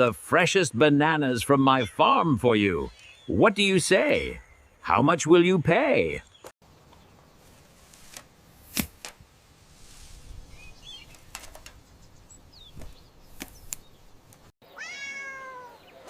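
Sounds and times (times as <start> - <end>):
faint outdoor ambience: 0.0 - 16.0
bird chirp: 1.6 - 5.3, 6.1 - 7.6, 10.4 - 16.0
cat meowing: 14.6 - 15.9.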